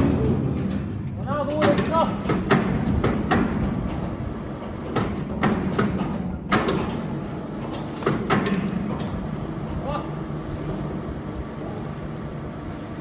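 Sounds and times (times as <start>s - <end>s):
engine running: 3.0s - 13.0s.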